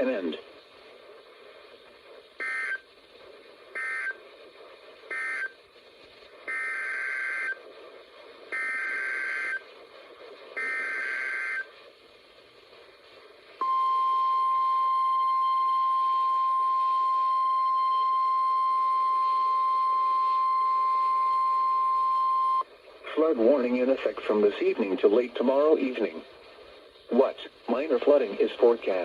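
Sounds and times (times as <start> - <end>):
steady weather radio alert tone: 2.3 - 3.0, 3.7 - 4.3, 5.0 - 5.6, 6.4 - 7.7, 8.4 - 9.7, 10.6 - 11.8, 27.1 - 29.0.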